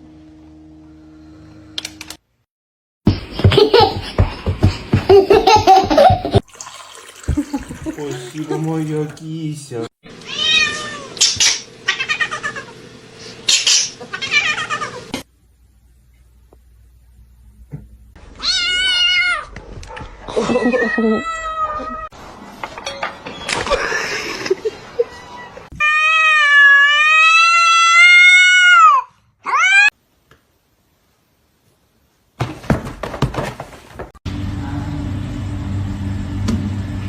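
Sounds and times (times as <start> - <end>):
cat meowing and yowling: 10.2 - 11.2, 18.4 - 19.5, 20.4 - 22.1, 25.1 - 29.9.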